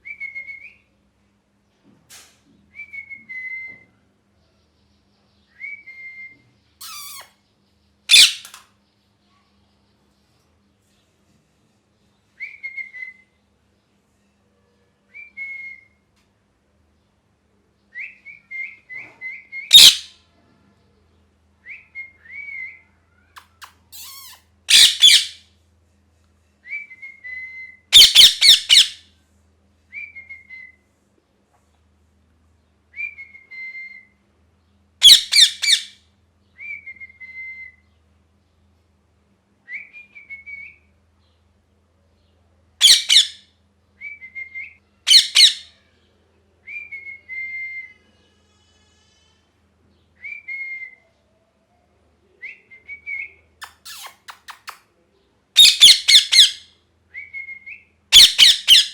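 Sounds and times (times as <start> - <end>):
parakeet screeching: 6.8 - 7.4, 8.1 - 8.5, 19.7 - 20.1, 23.4 - 25.4, 27.9 - 29.0, 35.0 - 35.9, 42.8 - 43.4, 45.0 - 45.7, 53.6 - 54.8, 55.6 - 56.6, 58.1 - 58.9.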